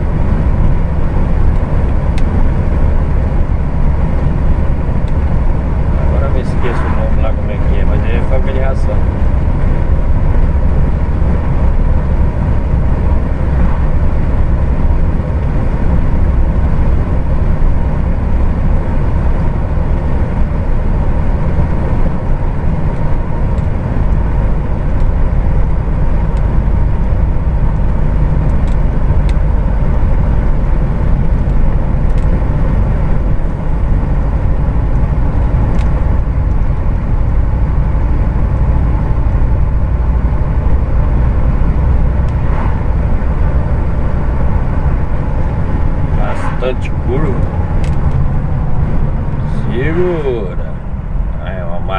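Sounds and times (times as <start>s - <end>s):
truck diesel engine rumbling: 0.0s - 51.9s
light ticks: 31.4s - 32.4s.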